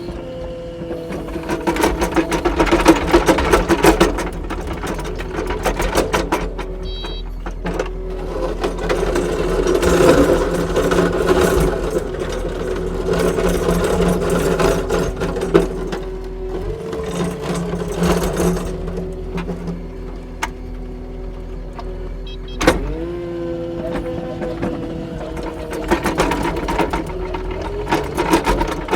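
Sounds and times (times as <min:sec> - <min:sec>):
skid steer diesel engine running: 0:00.0 - 0:28.9
machine clicking and rattling: 0:25.4 - 0:28.9.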